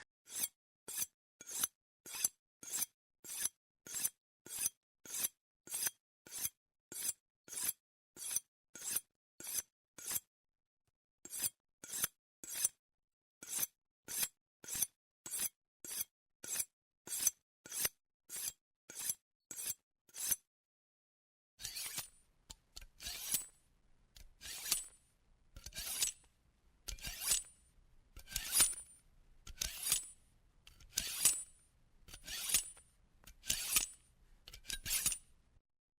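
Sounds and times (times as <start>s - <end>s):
knife sharpening strokes: 11.4s - 12.8s, 17.2s - 20.4s, 21.6s - 23.6s, 24.2s - 25.0s, 25.6s - 26.3s, 26.9s - 27.6s, 28.2s - 35.3s.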